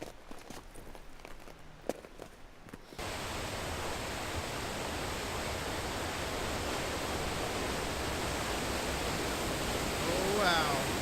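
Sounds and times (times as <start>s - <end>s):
waterfall rushing: 3.0s - 11.0s.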